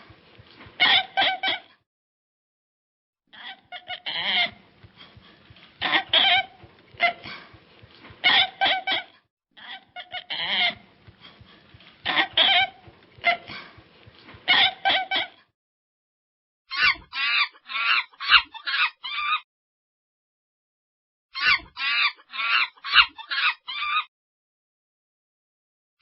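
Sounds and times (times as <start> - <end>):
chicken squawking: 5.8 - 7.5, 12.0 - 13.7, 16.7 - 19.4, 21.4 - 24.1.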